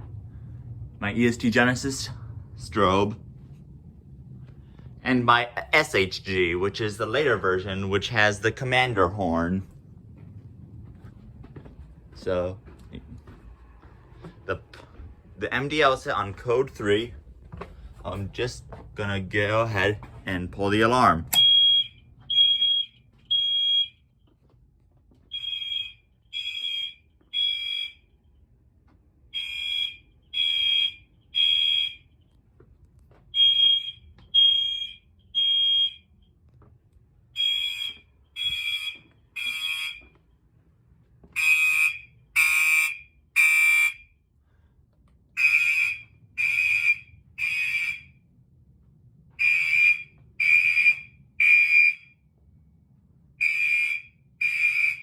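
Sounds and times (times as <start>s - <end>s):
fire alarm horns beeping: 21.3s - 24.2s, 25.3s - 28.4s, 29.2s - 32.4s, 33.3s - 36.4s, 37.3s - 40.3s, 41.3s - 44.3s, 45.3s - 48.2s, 49.4s - 52.3s, 53.4s - 55.0s.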